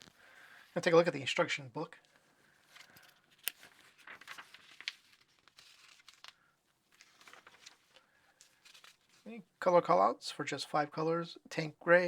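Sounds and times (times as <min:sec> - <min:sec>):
paper rustling and page turning: 0:02.6 - 0:09.3.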